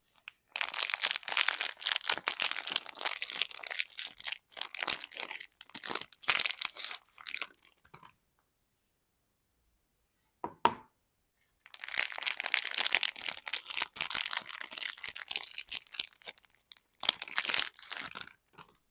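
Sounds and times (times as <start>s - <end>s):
wrapper crinkling and tearing: 0.2s - 7.8s, 11.6s - 18.7s.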